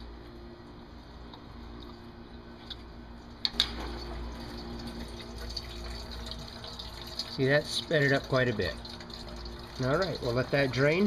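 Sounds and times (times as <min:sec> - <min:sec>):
liquid trickling through hose: 0:02.6 - 0:11.0.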